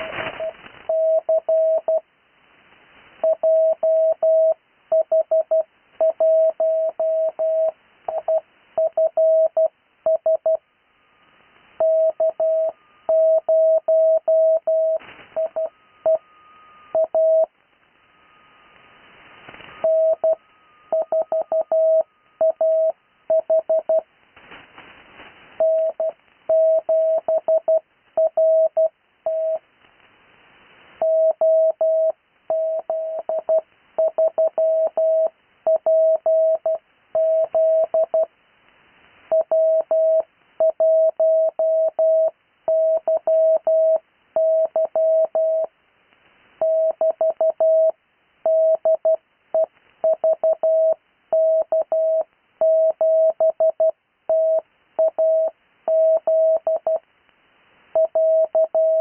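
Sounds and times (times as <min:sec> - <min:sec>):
radio hiss: 0:00.0 - 0:01.8, 0:17.8 - 0:19.8, 0:29.8 - 0:31.0
morse code keyed tone: 0:00.0 - 0:02.0, 0:03.2 - 0:10.6, 0:11.8 - 0:17.5, 0:19.7 - 0:24.0, 0:25.6 - 0:29.6, 0:31.0 - 0:38.3, 0:39.3 - 0:45.7, 0:46.6 - 0:57.0, 0:58.0 - 0:59.0
static bursts: 0:00.0 - 0:03.2.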